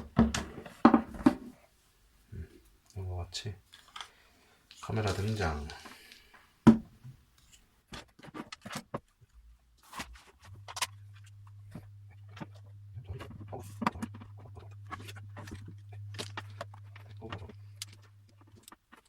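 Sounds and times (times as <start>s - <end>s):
microphone handling clicks and rustles: 9.8s - 19.0s
steady low hum: 10.4s - 18.8s.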